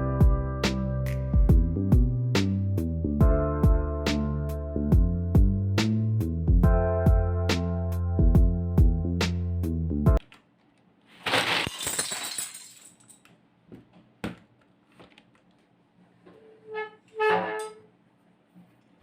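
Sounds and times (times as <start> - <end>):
short pitched squeaks: 16.4 - 17.9.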